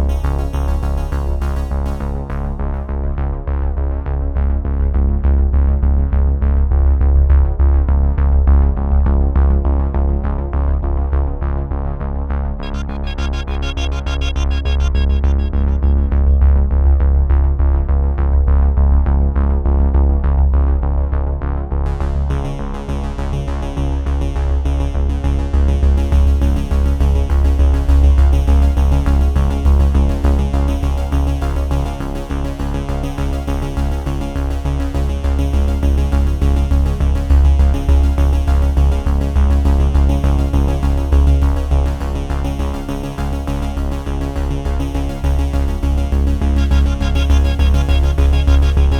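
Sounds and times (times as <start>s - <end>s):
instrumental music with heavy bass: 12.6s - 18.3s, 44.0s - 48.9s.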